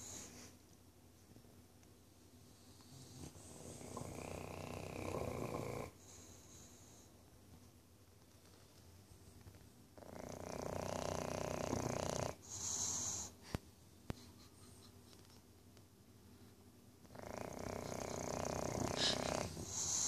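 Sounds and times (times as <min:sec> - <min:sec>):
dog snoring: 0:02.6 - 0:07.1, 0:10.0 - 0:13.4, 0:17.0 - 0:20.0.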